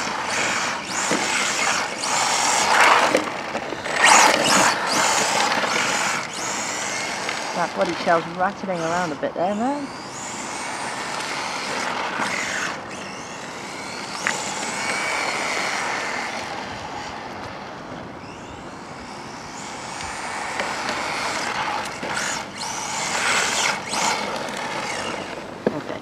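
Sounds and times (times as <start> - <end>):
rc car motor whine: 0.0 - 26.0.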